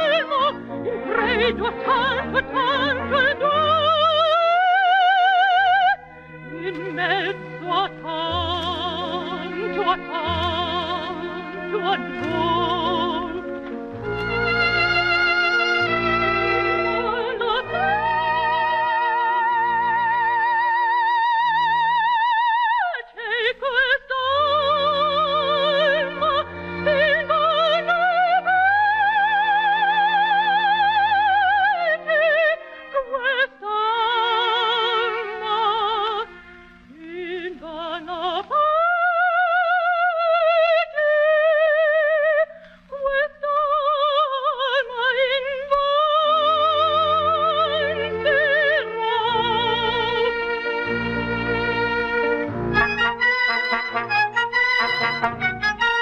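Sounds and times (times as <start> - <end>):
instrumental accompaniment: 0.0 - 20.3, 46.8 - 56.0
operatic soprano singing: 0.0 - 56.0.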